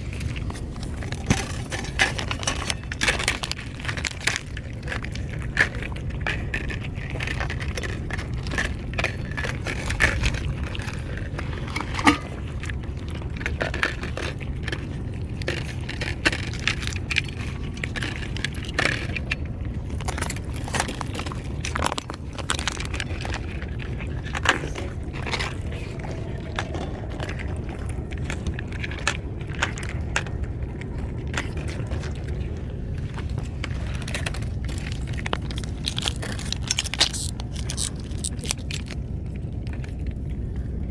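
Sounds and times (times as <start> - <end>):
cats eating wet food: 0.0 - 40.9
steady low rumble: 0.0 - 40.9.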